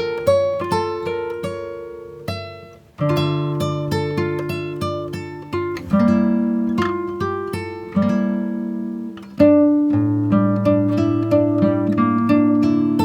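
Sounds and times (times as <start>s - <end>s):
plucked acoustic guitar melody: 0.0s - 13.0s.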